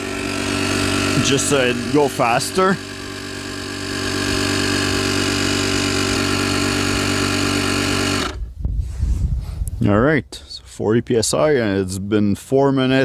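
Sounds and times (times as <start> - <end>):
air compressor running: 0.0 - 8.6.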